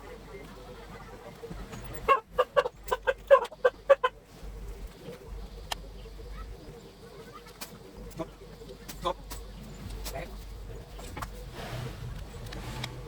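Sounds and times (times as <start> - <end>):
chicken clucking: 0.0 - 9.0.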